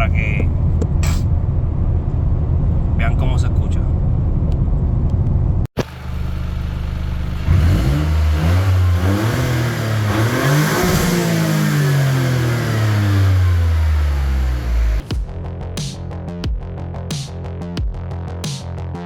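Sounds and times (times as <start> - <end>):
car engine revving: 4.0 - 15.6.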